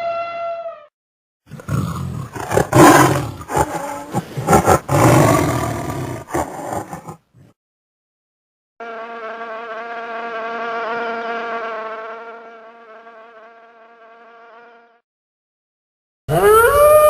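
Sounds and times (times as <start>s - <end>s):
flying insect buzzing: 8.8s - 15.0s.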